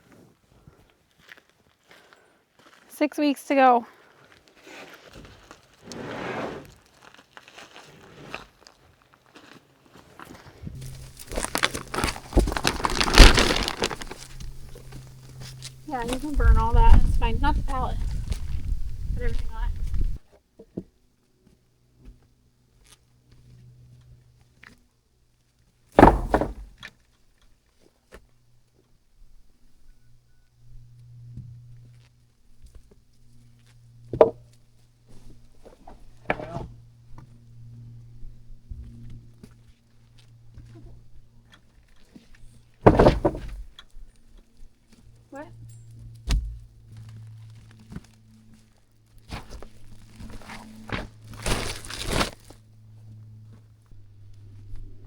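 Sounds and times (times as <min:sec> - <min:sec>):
material crinkling and rustling: 0:06.7 - 0:16.4, 0:46.9 - 0:52.6
footsteps: 0:10.2 - 0:20.2
loud clattering thunk: 0:26.0 - 0:26.7, 0:42.9 - 0:43.6
small knocks: 0:26.0 - 0:26.8, 0:42.8 - 0:43.8.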